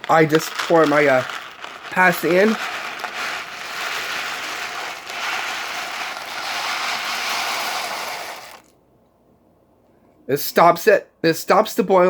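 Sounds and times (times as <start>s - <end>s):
dry pasta rattling into pot: 0.0s - 8.7s.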